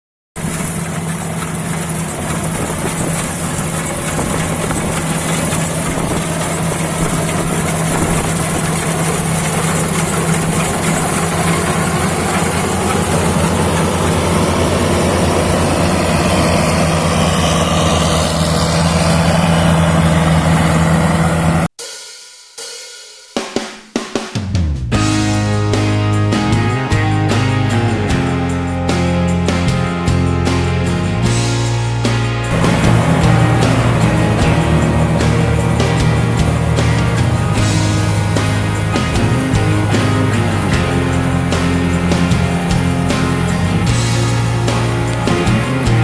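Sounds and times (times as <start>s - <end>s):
combine harvester engine humming: 0.4s - 21.7s, 25.0s - 46.0s
sharp percussive hits: 21.8s - 46.0s.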